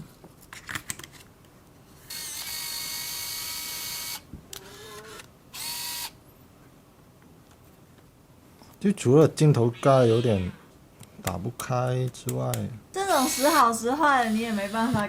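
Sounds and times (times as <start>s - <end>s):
camera motor whirring: 2.1s - 6.2s, 13.1s - 13.6s, 14.2s - 15.0s.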